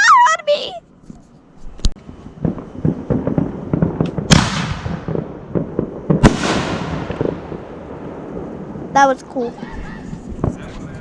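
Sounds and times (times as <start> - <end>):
fireworks crackling pops: 1.1 - 7.6, 9.5 - 11.0
fireworks booms: 2.0 - 11.0.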